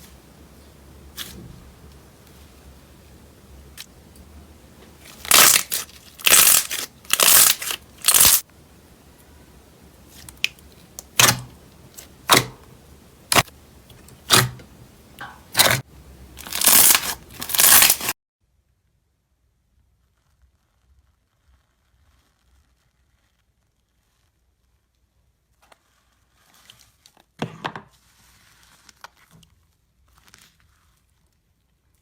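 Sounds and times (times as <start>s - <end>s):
slime squelching and snapping: 5.0s - 8.4s, 10.1s - 12.7s, 13.3s - 15.8s, 16.4s - 18.1s.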